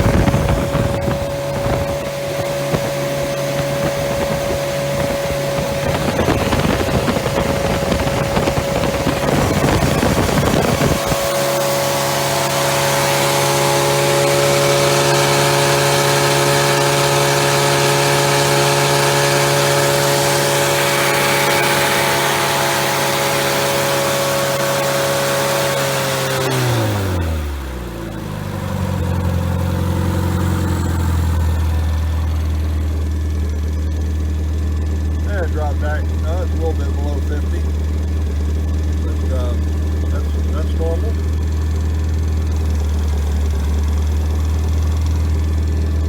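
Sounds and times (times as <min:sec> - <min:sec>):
car engine running and idling: 0:00.0 - 0:46.0.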